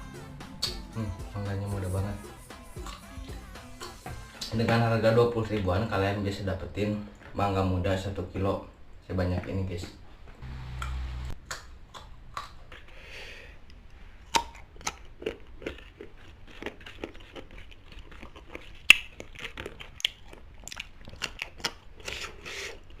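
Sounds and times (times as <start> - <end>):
crunching and chewing mango: 11.4 - 23.0.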